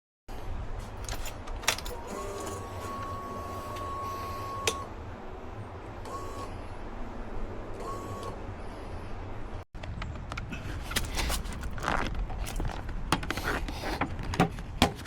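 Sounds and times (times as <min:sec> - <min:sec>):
fuel pump high whine: 0:01.0 - 0:09.6.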